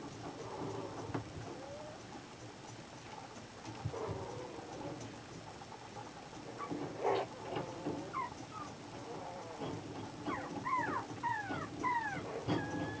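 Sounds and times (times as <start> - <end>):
background noise: 0.0 - 13.0
puppy whimpering: 8.0 - 13.0.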